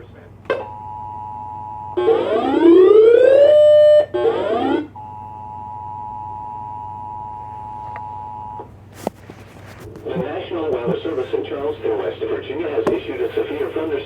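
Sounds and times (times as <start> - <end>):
rising siren: 2.0 - 4.9.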